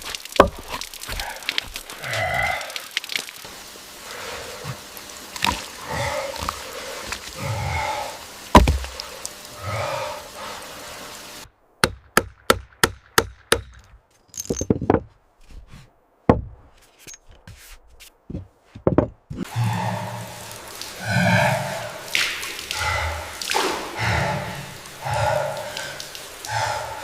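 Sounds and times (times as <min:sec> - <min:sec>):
steady hiss: 0:00.0 - 0:11.6, 0:19.5 - 0:27.0.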